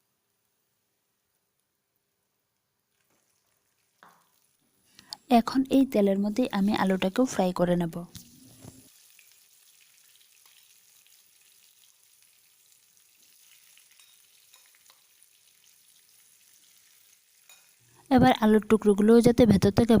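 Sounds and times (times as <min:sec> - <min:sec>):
potatoes sizzling in hot oil: 0:02.9 - 0:18.6.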